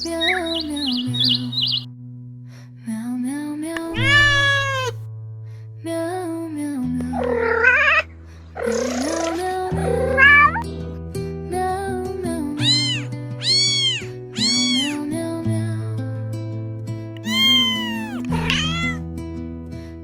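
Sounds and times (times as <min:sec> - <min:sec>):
cat meowing: 0:04.0 - 0:05.0, 0:12.6 - 0:15.0, 0:17.2 - 0:19.0.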